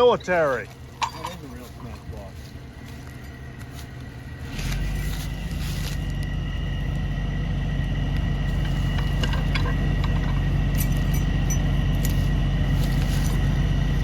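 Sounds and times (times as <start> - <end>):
truck engine idling: 0.0 - 14.0.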